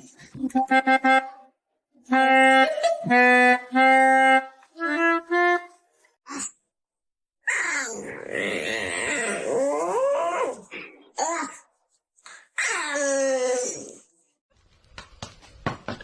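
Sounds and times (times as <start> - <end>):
clarinet-like held notes: 0.4 - 5.9.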